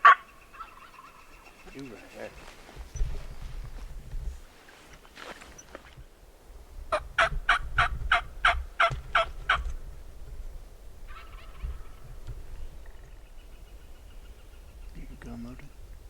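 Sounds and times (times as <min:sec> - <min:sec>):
turkey call hen yelps: 0:00.0 - 0:01.2, 0:11.1 - 0:12.0.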